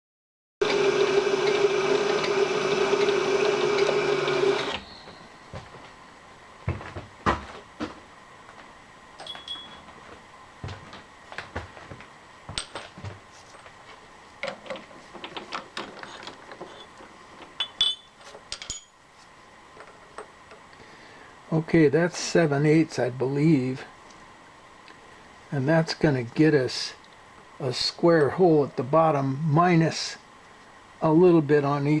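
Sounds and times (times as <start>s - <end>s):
metal tools clinking: 9.2s - 9.9s, 17.6s - 19.0s.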